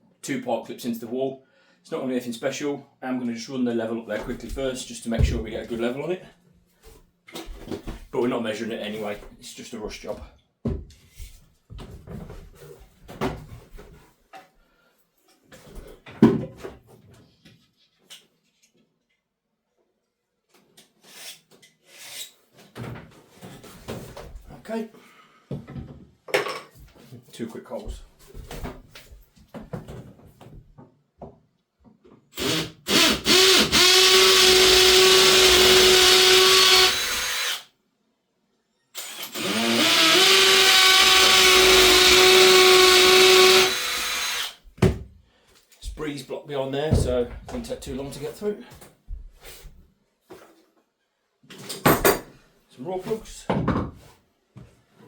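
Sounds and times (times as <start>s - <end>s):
tools knocking and clattering: 25.6s - 27.0s, 51.5s - 52.4s
power drill boring into block wall: 32.4s - 37.7s, 39.0s - 44.6s.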